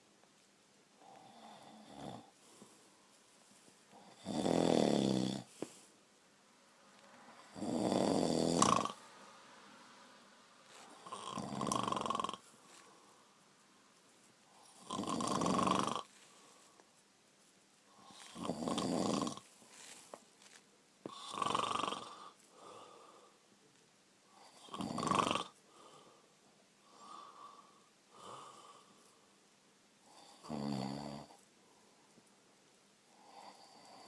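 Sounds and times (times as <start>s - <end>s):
person snoring loudly: 1.0s - 2.3s, 4.0s - 5.5s, 7.4s - 9.0s, 10.7s - 12.4s, 14.6s - 16.1s, 18.0s - 19.4s, 21.1s - 22.8s, 24.4s - 25.6s, 30.1s - 31.4s.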